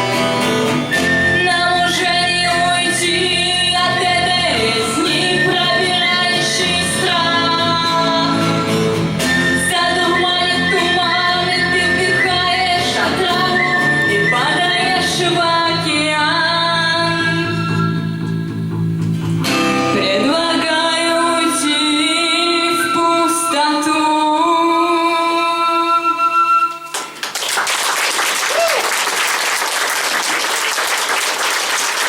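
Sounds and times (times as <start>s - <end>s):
guitar accompaniment: 0.0s - 25.2s
person singing wordless melody: 1.0s - 18.1s, 19.9s - 26.8s.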